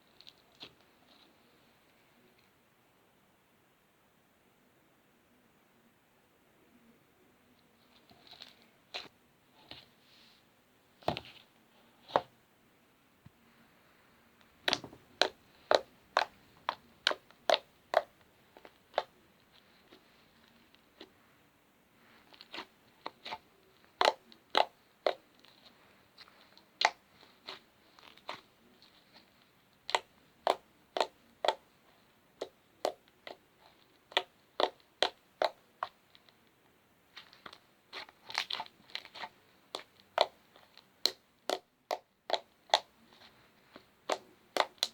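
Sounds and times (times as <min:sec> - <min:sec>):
slime crackling and popping: 0:22.3 - 0:25.6, 0:26.4 - 0:31.7, 0:32.4 - 0:36.2, 0:37.1 - 0:43.2, 0:44.0 - 0:44.9.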